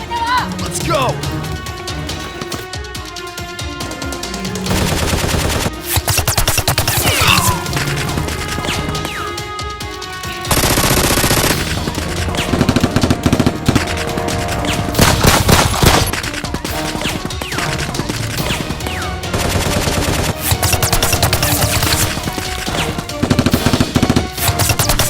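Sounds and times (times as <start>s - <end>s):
background music: 0.0s - 25.0s
rapid automatic gunfire: 4.5s - 9.4s, 10.4s - 25.0s.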